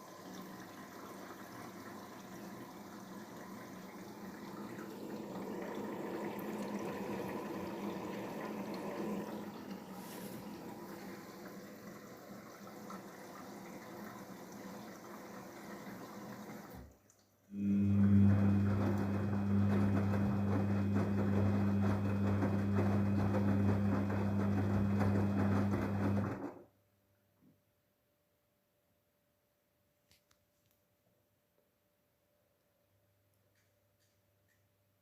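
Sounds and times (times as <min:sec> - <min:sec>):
washing machine pump hum: 0:00.0 - 0:26.6
water sloshing and trickling: 0:00.2 - 0:17.4.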